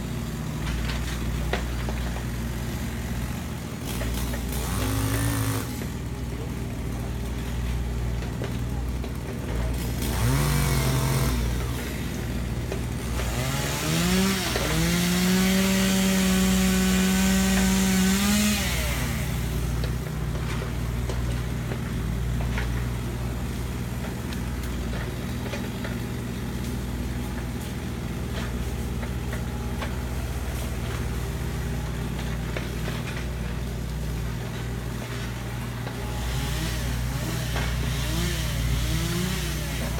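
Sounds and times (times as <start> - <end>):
chainsaw engine revving: 2.3 - 6.0, 9.7 - 20.0, 35.8 - 39.9.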